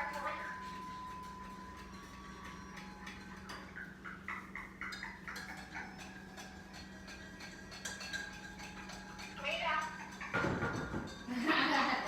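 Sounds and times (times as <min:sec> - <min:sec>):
parrot chirping: 0:01.8 - 0:11.2.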